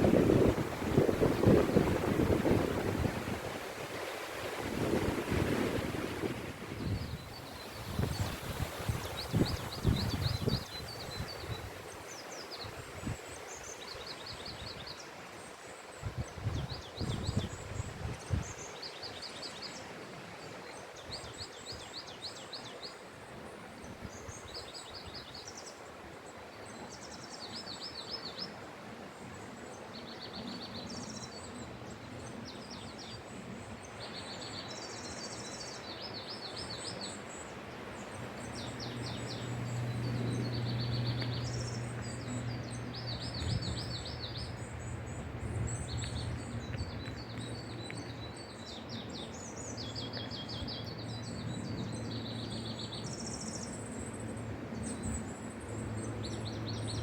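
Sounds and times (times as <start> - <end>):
wind through a forest: 0.0 - 57.0
small birds trilling: 36.9 - 57.0.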